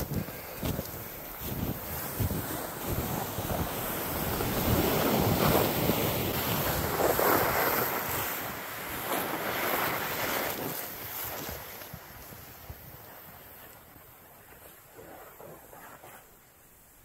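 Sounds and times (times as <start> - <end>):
strong wind gusting: 0.0 - 13.5
wind buffeting microphone: 0.0 - 16.2.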